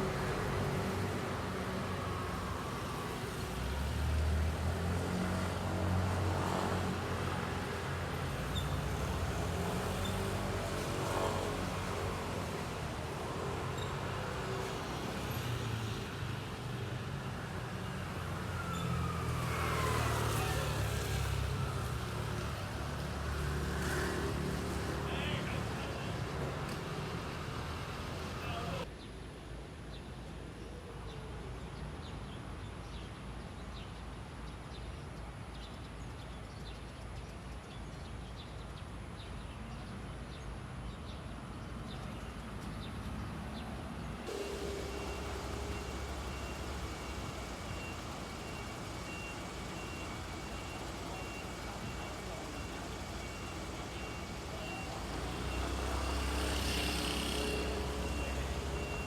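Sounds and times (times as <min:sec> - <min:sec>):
low traffic rumble: 0:00.0 - 0:29.0, 0:35.2 - 0:59.0
reversing alarm beeping: 0:44.3 - 0:59.0
truck engine running: 0:44.3 - 0:59.0.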